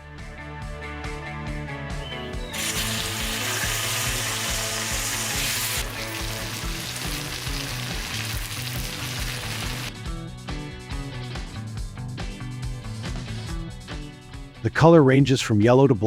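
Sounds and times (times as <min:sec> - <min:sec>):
background music: 0:00.0 - 0:16.0
tofu sizzling in hot oil: 0:02.5 - 0:09.9.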